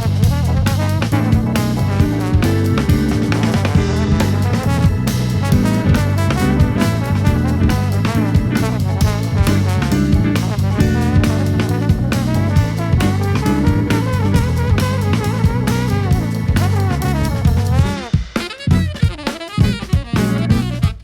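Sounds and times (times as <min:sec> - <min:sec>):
brass and saxophone: 0:00.0 - 0:21.0
drum kit: 0:00.0 - 0:21.0
electric bass: 0:00.0 - 0:21.0
jazz fusion band playing: 0:00.0 - 0:21.0
keyboard: 0:00.0 - 0:21.0.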